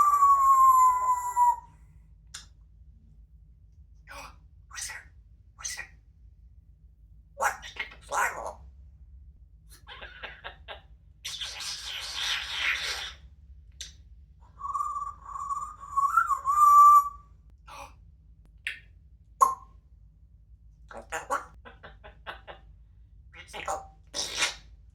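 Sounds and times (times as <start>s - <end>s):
parrot wavering whistle: 0.0s - 1.7s, 14.6s - 17.2s
parrot raspy noise: 4.1s - 6.0s, 7.4s - 8.6s, 11.2s - 13.2s, 20.9s - 21.6s, 23.4s - 24.7s
parrot squawks: 4.7s - 6.0s, 7.4s - 8.6s, 11.3s - 13.2s, 20.9s - 21.6s, 23.4s - 24.7s.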